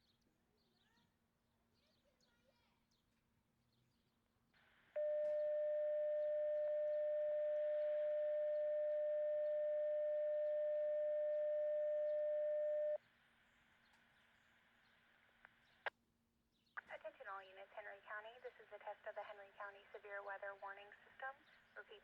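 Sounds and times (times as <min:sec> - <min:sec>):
radio hiss: 0:04.6 - 0:05.0, 0:16.8 - 0:22.0
steady paging tone: 0:05.0 - 0:13.0.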